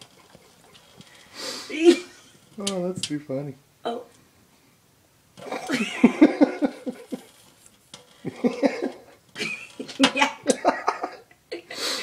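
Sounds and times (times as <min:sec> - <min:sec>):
person laughing: 0:05.4 - 0:07.3, 0:08.2 - 0:11.9.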